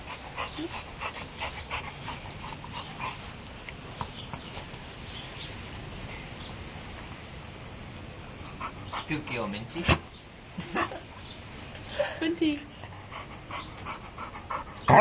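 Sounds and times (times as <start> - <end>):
dog puffing breathily: 0.0 - 4.8.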